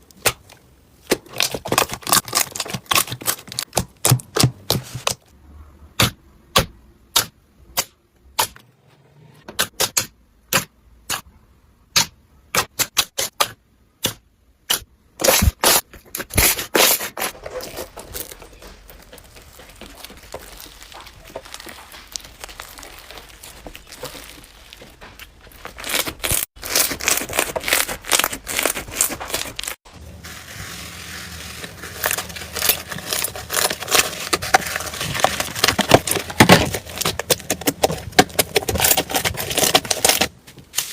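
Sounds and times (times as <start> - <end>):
slime squeezed by hand crackling: 19.2 - 29.8.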